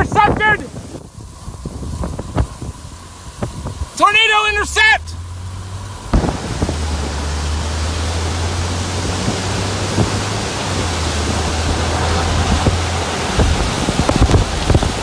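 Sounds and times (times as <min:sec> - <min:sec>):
strong wind rushing: 0:06.0 - 0:15.0.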